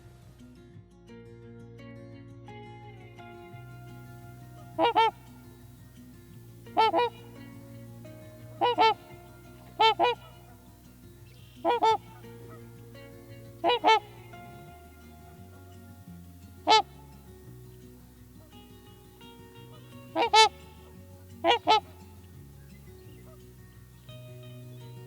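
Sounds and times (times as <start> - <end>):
animal honking call: 3.5 - 5.7, 6.6 - 15.9, 16.6 - 17.3, 18.4 - 22.3.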